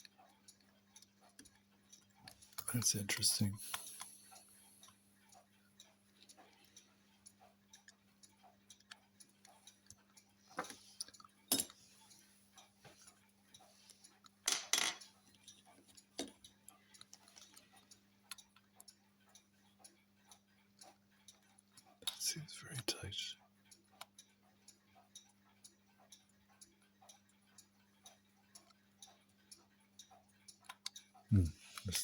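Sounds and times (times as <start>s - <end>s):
faint clock ticking: 0.0s - 32.0s
small metal parts clicking: 14.4s - 15.6s.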